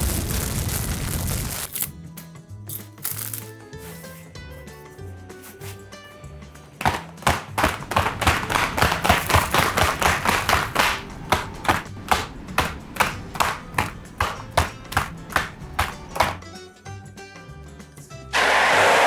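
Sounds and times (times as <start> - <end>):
sharp knocks: 6.8 - 16.4.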